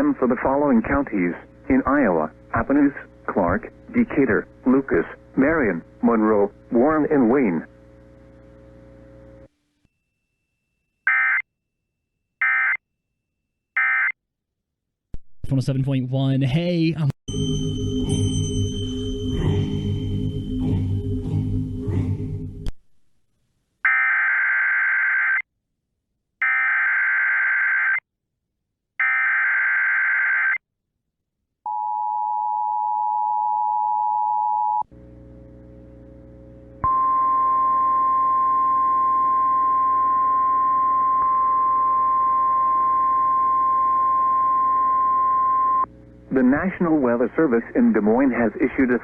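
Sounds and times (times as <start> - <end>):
two-pitch attention tone: 17.3 - 22.6
steady warning alarm tone: 17.3 - 22.7.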